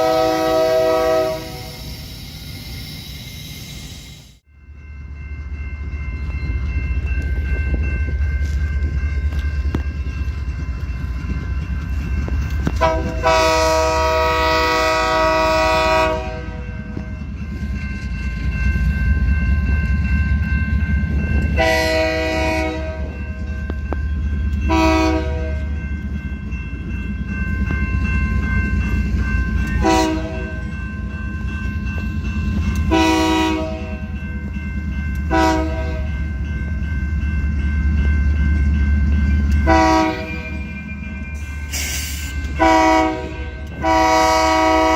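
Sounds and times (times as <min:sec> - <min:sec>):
locomotive air horn blasts: 0:00.0 - 0:01.8, 0:12.8 - 0:16.6, 0:21.6 - 0:23.2, 0:24.7 - 0:25.6, 0:29.8 - 0:30.6, 0:32.9 - 0:34.0, 0:35.3 - 0:36.1, 0:39.6 - 0:40.4, 0:42.6 - 0:44.9.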